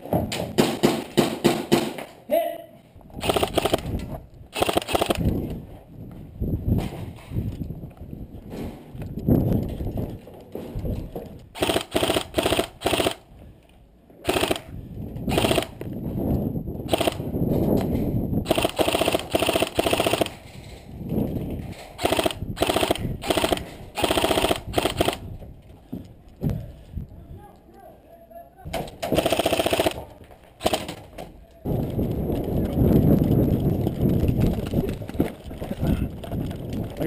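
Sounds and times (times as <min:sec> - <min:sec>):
airsoft rifle firing bursts: 0:03.2 - 0:03.9, 0:04.5 - 0:05.3, 0:11.6 - 0:13.2, 0:14.3 - 0:14.7, 0:15.3 - 0:15.8, 0:16.9 - 0:17.2, 0:18.5 - 0:20.4, 0:22.0 - 0:25.2, 0:29.1 - 0:30.0, 0:30.6 - 0:31.0.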